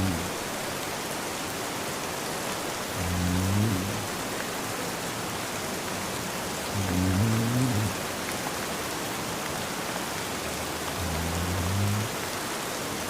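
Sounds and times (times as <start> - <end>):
man snoring: 0.0 - 0.4, 3.0 - 4.2, 6.7 - 8.0, 11.0 - 12.2
steady rain: 0.0 - 13.0.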